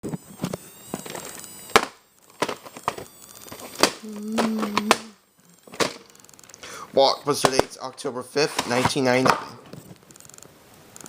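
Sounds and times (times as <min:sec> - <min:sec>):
brief low tone: 0:04.0 - 0:05.2.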